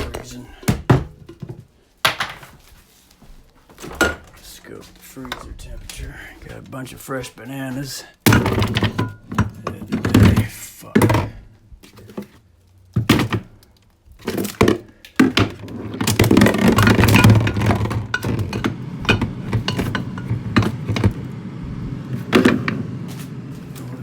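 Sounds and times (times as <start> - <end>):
objects thunking and clinking: 0.0 - 2.7, 3.7 - 5.8, 8.2 - 24.0
clattering and rummaging: 0.0 - 6.8, 8.2 - 24.0
low hum: 16.5 - 24.0.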